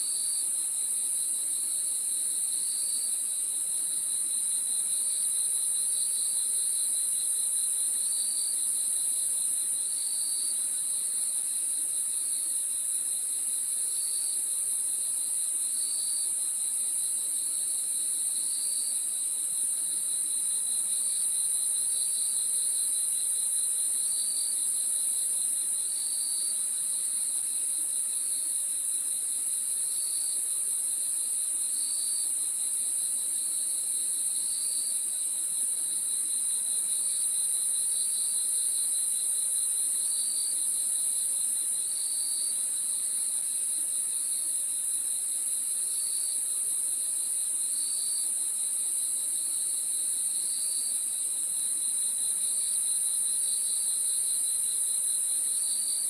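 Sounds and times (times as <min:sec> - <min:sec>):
lower cricket chirp: 0:00.0 - 0:56.0.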